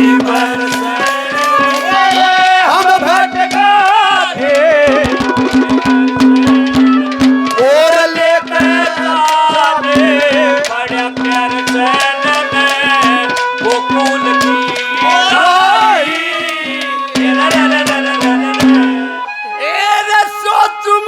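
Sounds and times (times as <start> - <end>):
quick drum strokes: 0.0 - 3.8, 4.4 - 15.5
sliding melody: 0.0 - 21.0.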